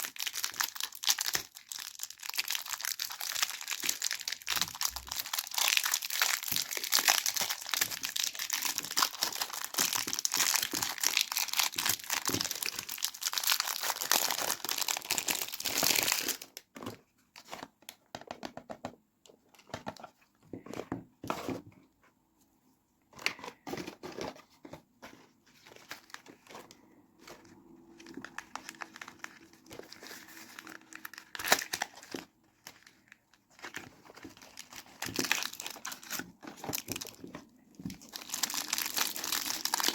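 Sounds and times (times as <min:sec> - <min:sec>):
wrapper crinkling and tearing: 0:00.0 - 0:16.7, 0:28.0 - 0:39.9.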